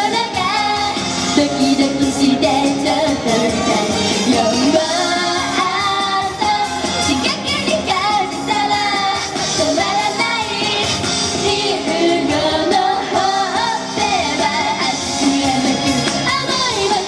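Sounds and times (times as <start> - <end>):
girls singing pop song: 0.0 - 17.0
pop backing music: 0.0 - 17.0.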